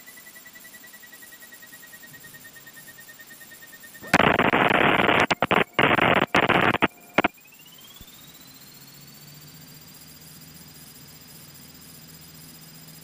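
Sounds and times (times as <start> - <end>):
radio static hiss: 4.0 - 7.3.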